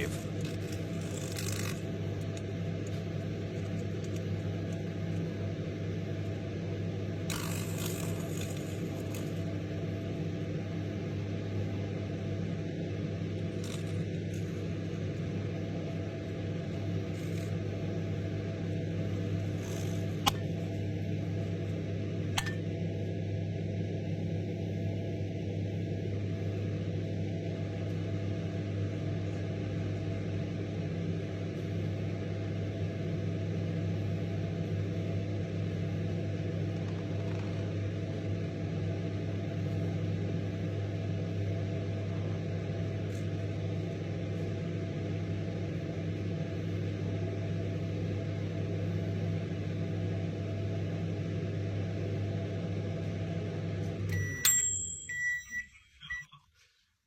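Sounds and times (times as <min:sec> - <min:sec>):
microwave oven humming: 0:00.0 - 0:57.0
short high beeps: 0:54.2 - 0:56.4.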